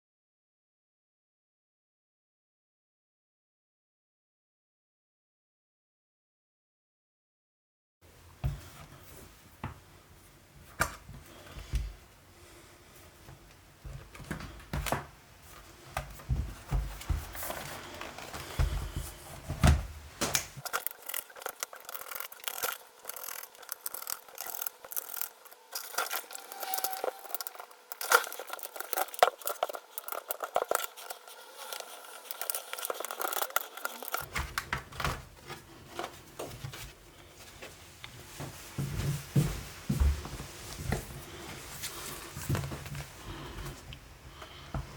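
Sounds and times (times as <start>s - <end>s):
tools clicking and scraping: 20.6s - 34.3s.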